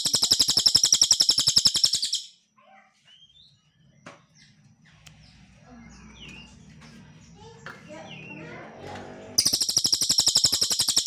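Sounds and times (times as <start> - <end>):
bird rattling trill: 0.0 - 2.3, 9.4 - 11.0
faint bird chirps: 0.0 - 8.7, 9.4 - 11.0.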